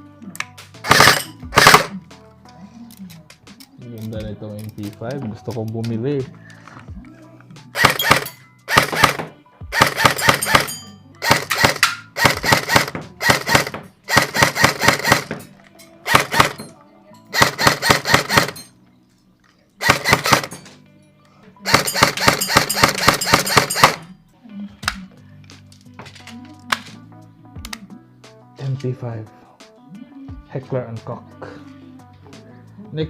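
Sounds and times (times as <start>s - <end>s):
airsoft gun firing bursts: 0.8s - 1.9s, 7.8s - 15.4s, 16.1s - 16.7s, 17.3s - 18.6s, 19.8s - 20.6s, 21.7s - 24.0s.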